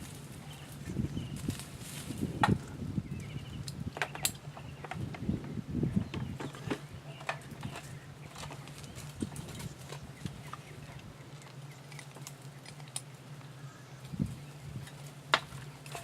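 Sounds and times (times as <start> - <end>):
light handling clicks and knocks: 3.6 - 14.2, 14.8 - 16.0.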